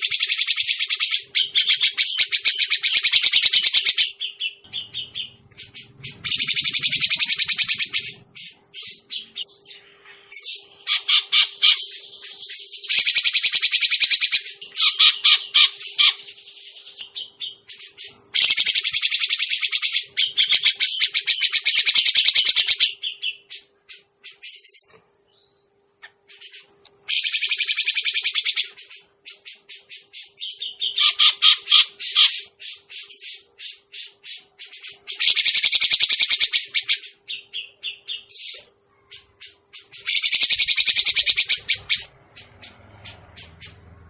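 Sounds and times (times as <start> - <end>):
bird chattering rattles: 39.8 - 43.8.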